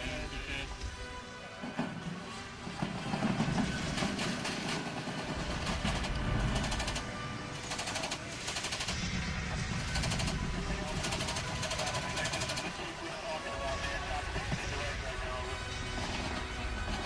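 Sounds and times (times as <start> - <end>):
music: 0.0 - 17.0
rapid automatic gunfire: 3.2 - 12.9.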